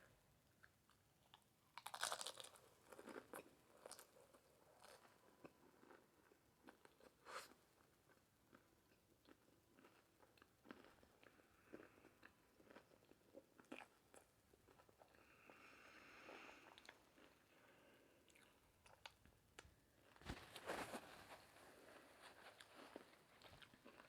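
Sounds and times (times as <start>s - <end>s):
person chewing and crunching: 0.6s - 15.6s, 22.5s - 24.0s.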